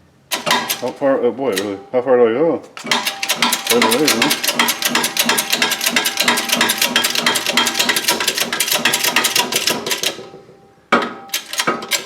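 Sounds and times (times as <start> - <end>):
rapid mechanical clicking: 0.3 - 1.8, 2.8 - 10.2, 11.3 - 12.0.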